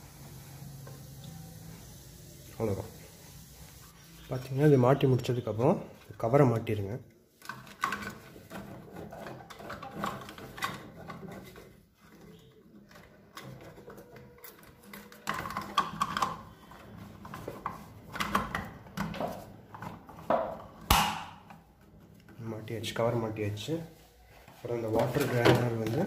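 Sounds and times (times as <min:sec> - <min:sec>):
plastic cover clicking and rattling: 0:07.4 - 0:16.5.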